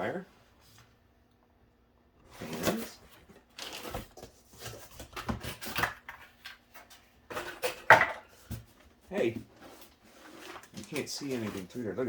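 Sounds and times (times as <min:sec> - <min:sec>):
packaging rustling: 0:02.4 - 0:06.2, 0:09.7 - 0:11.9.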